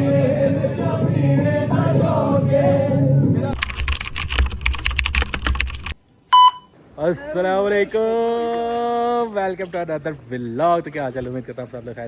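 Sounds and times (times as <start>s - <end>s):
music with singing: 0.0s - 3.6s.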